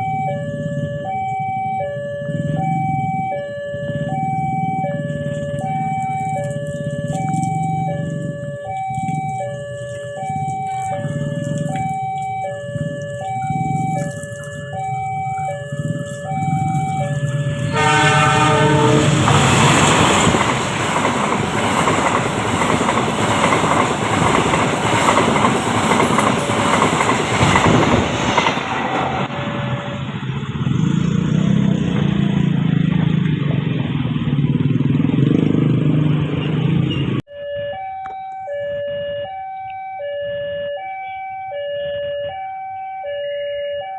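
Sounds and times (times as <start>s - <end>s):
two-tone crossing alarm: 0.0s - 30.2s, 37.1s - 43.9s
road vehicle engines running: 0.0s - 37.3s
train passing with wheel clatter: 12.7s - 37.2s
train horn blast: 17.5s - 20.0s.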